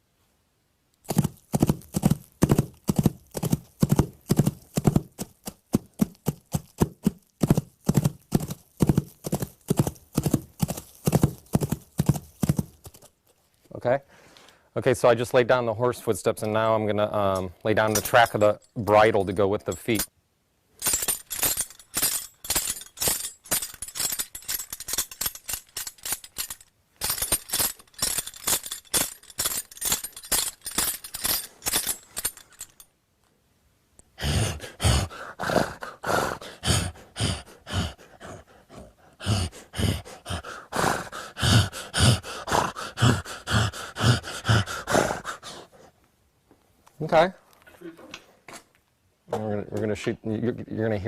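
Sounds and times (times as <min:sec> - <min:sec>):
metal bridle fittings jangling: 0:01.0 - 0:13.1, 0:17.3 - 0:20.1, 0:20.8 - 0:33.0
low hoof-like clops: 0:01.1 - 0:13.1.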